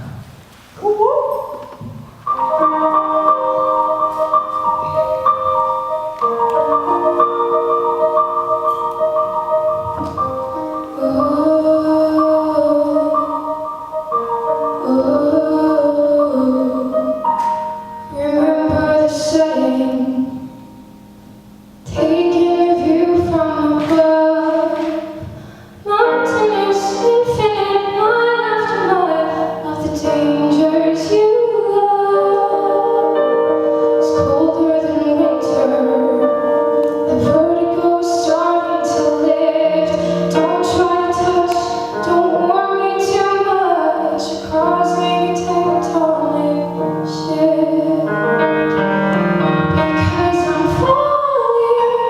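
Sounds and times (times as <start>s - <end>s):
musical accompaniment: 1.3s - 52.0s
woman singing: 10.1s - 13.7s, 14.6s - 17.3s, 18.1s - 20.5s, 21.9s - 48.3s, 49.7s - 52.0s.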